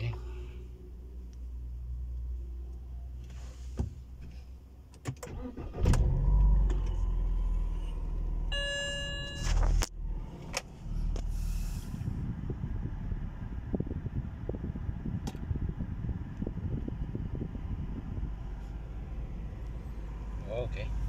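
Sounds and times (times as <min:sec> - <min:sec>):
car engine cranking and running: 0:04.1 - 0:21.0
short electronic tone: 0:08.5 - 0:09.8.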